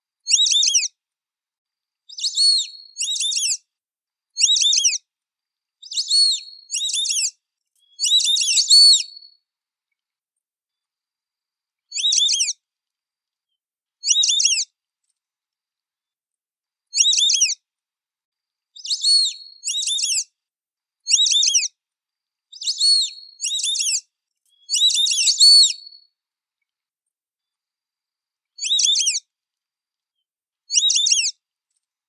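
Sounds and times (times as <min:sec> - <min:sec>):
duck whistled calls: 0:08.0 - 0:09.1.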